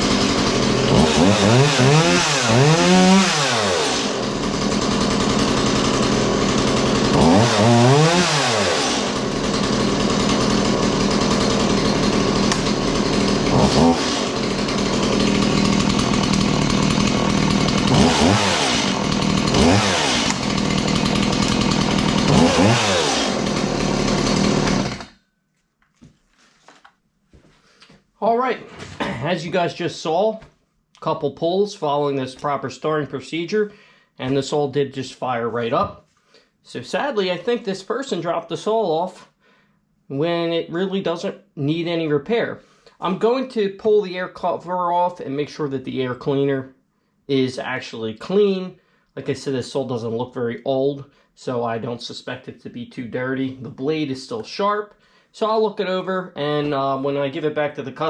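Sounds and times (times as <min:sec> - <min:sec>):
chainsaw engine revving: 0:00.0 - 0:25.2.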